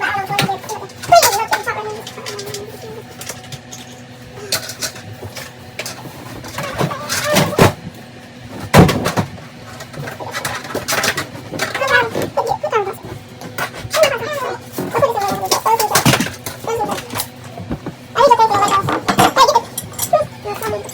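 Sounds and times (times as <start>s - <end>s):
objects knocking and clattering: 8.5s - 20.9s.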